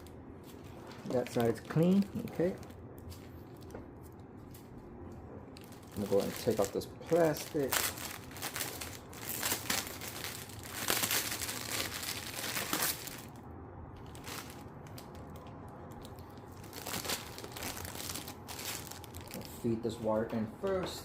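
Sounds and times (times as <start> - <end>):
plastic covering crinkling: 0.0 - 3.8, 5.6 - 13.4, 14.0 - 19.7.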